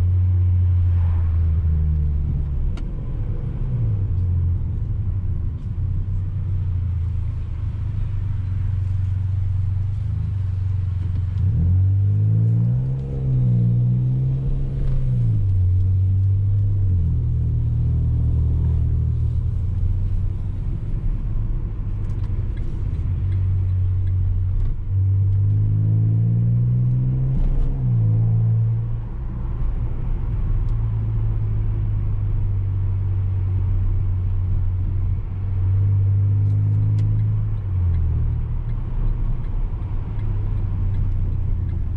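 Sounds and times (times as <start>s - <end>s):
car engine drone: 0.0s - 41.9s
car engine revving: 9.9s - 20.2s.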